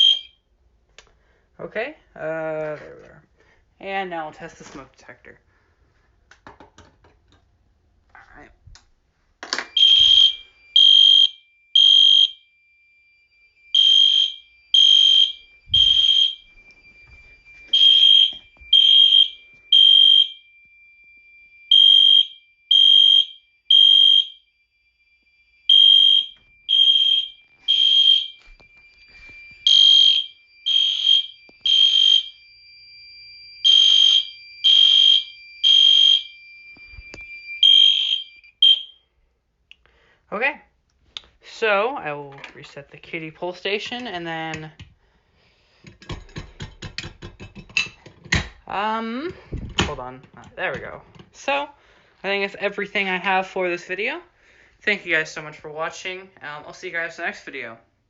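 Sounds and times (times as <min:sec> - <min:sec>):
fire alarm beeping: 0:00.0 - 0:00.5, 0:09.4 - 0:40.2
faint steady high tone: 0:09.4 - 0:39.2.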